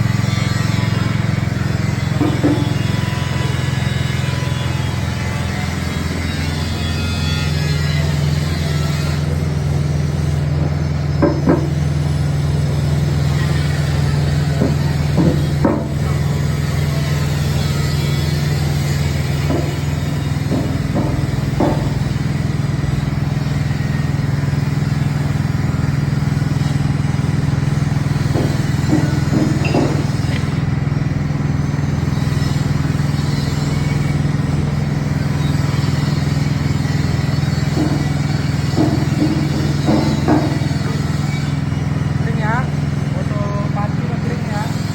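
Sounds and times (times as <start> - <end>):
small petrol engine running: 0.0 - 44.9
machine knocking and clattering: 19.2 - 22.8, 25.9 - 31.4, 35.5 - 42.2.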